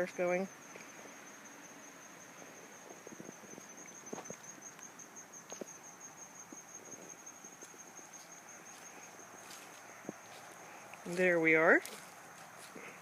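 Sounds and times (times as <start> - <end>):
insects trilling: 0.0 - 13.0
footsteps on twigs and leaves: 2.8 - 4.8, 6.5 - 13.0.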